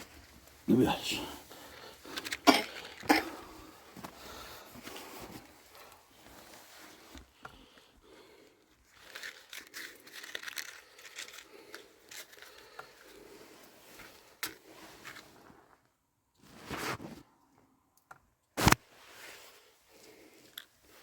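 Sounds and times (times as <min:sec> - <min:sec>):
material crinkling and tearing: 0:09.0 - 0:12.8, 0:18.6 - 0:18.8
sharp snap: 0:18.6 - 0:18.8.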